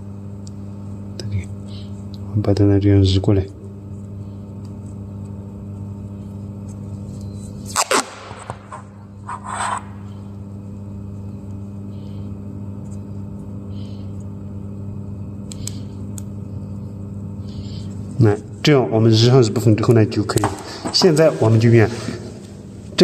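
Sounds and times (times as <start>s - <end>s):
steady low hum: 0.0s - 23.0s
tape ripping off roll: 7.7s - 9.9s.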